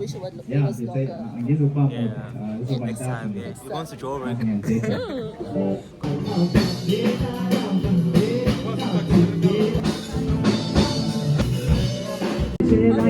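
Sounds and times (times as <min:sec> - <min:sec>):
drums and guitar music: 0:06.0 - 0:13.0.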